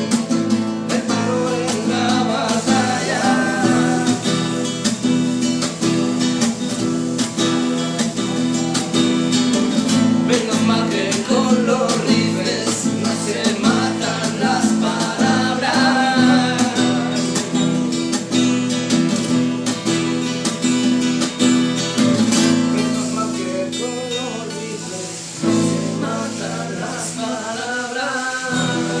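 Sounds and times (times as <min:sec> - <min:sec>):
person singing: 0:00.0 - 0:05.3, 0:07.6 - 0:18.2, 0:22.5 - 0:29.0
strummed acoustic guitar: 0:00.0 - 0:29.0.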